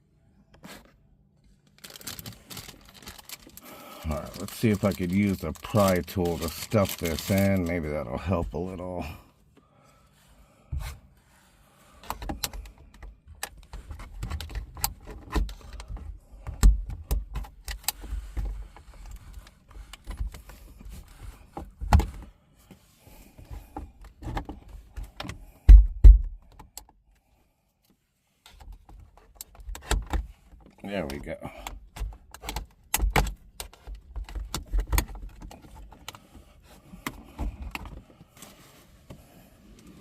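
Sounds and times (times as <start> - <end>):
heavier thumps: 25.6 - 26.4.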